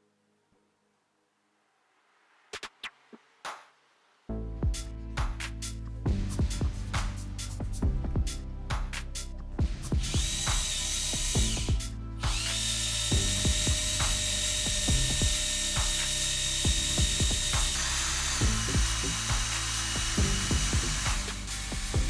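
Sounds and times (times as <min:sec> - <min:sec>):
background music: 0:04.3 - 0:22.0
power tool whining: 0:10.0 - 0:22.0.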